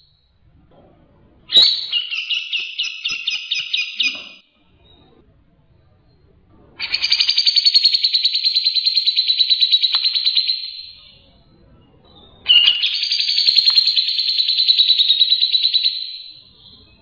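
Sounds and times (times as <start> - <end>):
songbird trilling: 1.5 - 4.4, 6.8 - 11.2, 12.5 - 16.9.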